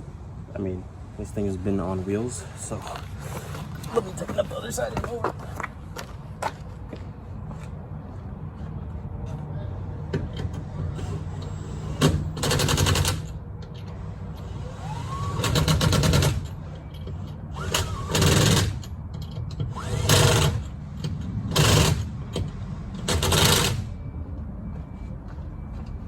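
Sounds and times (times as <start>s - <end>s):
impact wrench rattling bursts: 12.0s - 13.3s, 14.5s - 16.6s, 17.2s - 19.0s, 19.6s - 20.7s, 21.5s - 22.2s, 23.0s - 23.9s.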